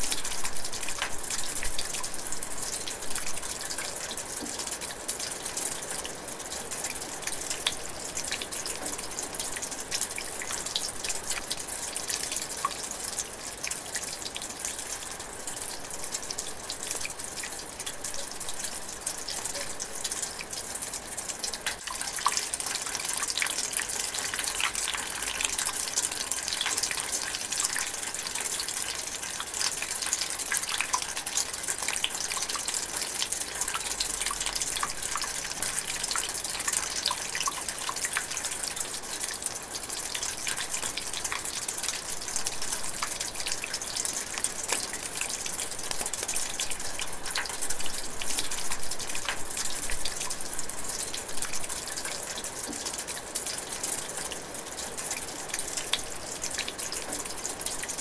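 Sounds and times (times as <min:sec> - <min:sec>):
light rain drizzling: 0:00.0 - 0:58.0.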